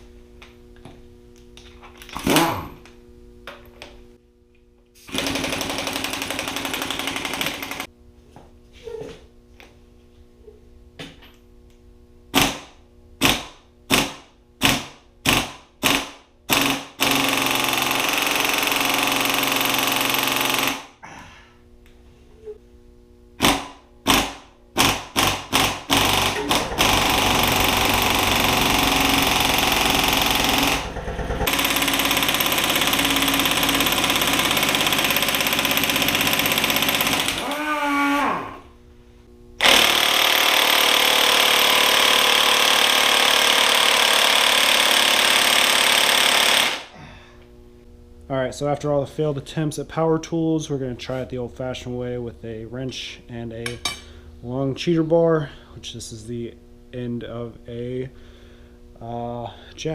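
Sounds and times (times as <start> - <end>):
air impact wrench hammering: 5.0 - 7.9, 12.3 - 21.0, 23.4 - 37.4, 39.6 - 46.9.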